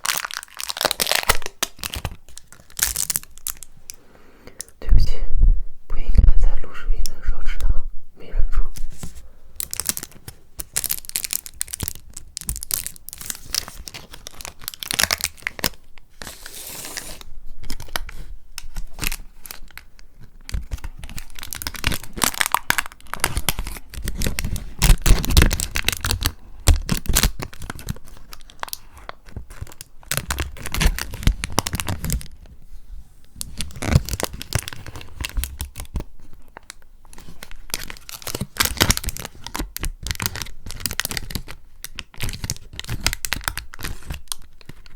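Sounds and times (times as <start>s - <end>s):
paper tearing and crinkling: 0.0s - 3.6s, 12.6s - 18.1s.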